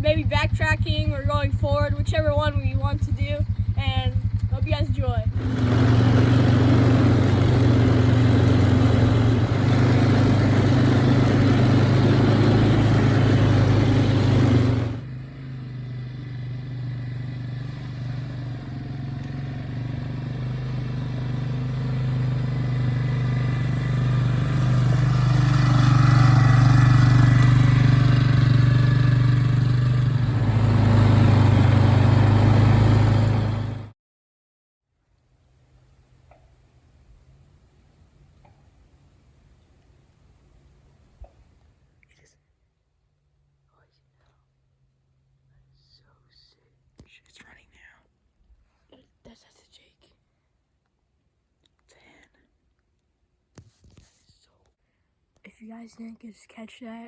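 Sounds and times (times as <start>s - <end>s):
vehicle engine humming: 0.0s - 33.9s.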